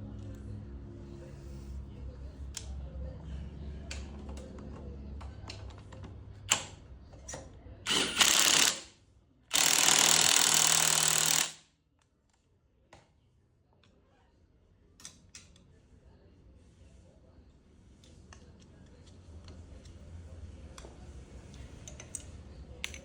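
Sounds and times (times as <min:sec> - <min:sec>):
power tool bursts: 0:07.9 - 0:08.9, 0:09.5 - 0:11.6.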